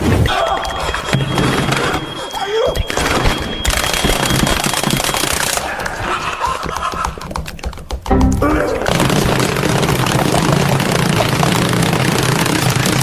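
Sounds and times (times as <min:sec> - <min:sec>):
thin high tone: 0:00.4 - 0:05.2
crackling pops: 0:07.2 - 0:13.0
layered sound effects: 0:08.1 - 0:13.0.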